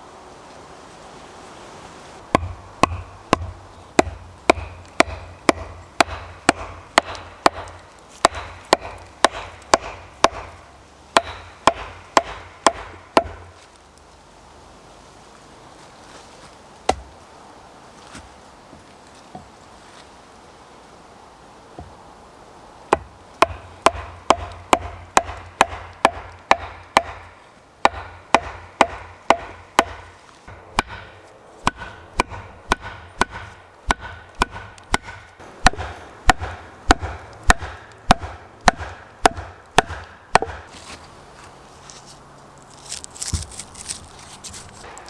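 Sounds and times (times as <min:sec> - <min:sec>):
hand tool striking wood: 0:02.3 - 0:10.6, 0:11.2 - 0:13.6, 0:22.9 - 0:41.0, 0:42.7 - 0:45.0.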